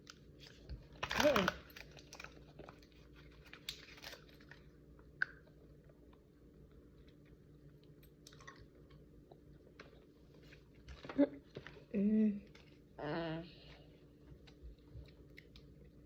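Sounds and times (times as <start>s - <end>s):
low steady hum: 0.0s - 16.0s
chewing and mouth clicks: 6.6s - 10.0s, 14.4s - 16.0s.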